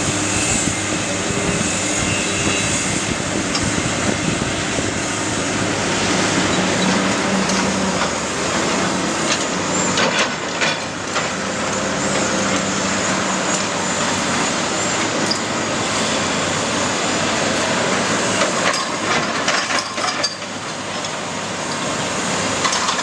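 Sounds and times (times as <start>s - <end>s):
diesel demolition machinery running: 0.0s - 23.0s.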